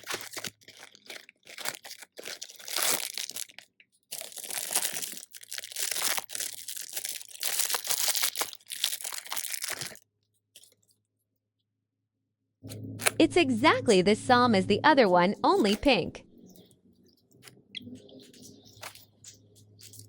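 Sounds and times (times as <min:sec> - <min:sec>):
plastic packaging crinkling and tearing: 0:00.0 - 0:10.0.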